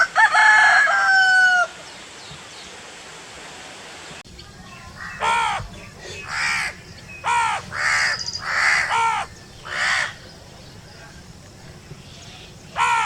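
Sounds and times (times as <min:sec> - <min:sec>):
crow cawing: 0:05.0 - 0:05.6, 0:06.2 - 0:10.2, 0:12.8 - 0:13.0.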